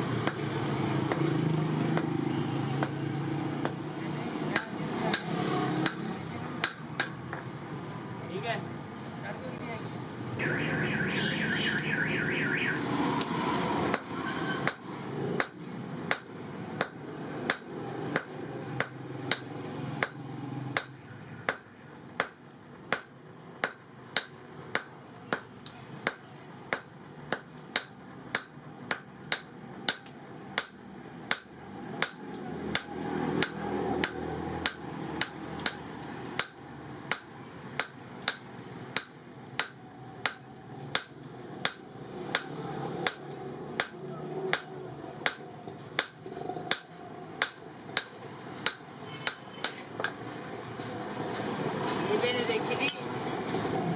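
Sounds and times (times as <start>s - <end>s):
hammer striking steel on anvil: 43.8s - 50.2s.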